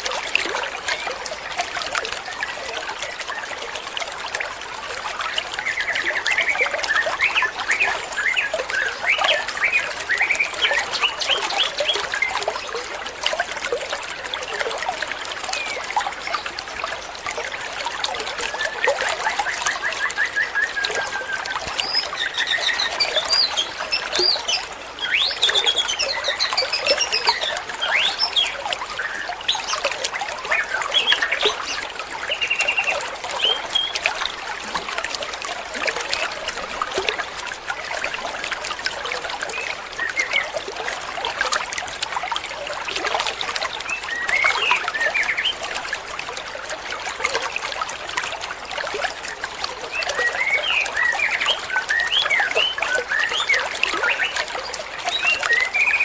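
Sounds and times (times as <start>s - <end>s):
running water trickling: 0.0s - 56.0s
bird chirping and warbling: 18.6s - 34.0s.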